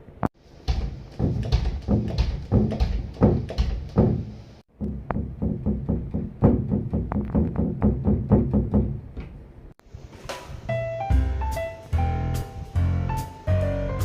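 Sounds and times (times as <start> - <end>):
background music with steady beat: 0.4 - 7.6, 10.7 - 14.0.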